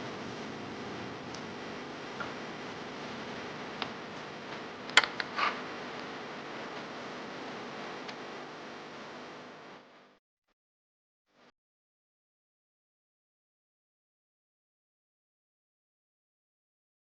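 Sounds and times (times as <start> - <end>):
steady hiss: 0.0 - 10.0
sharp clicks and taps: 3.8 - 5.3.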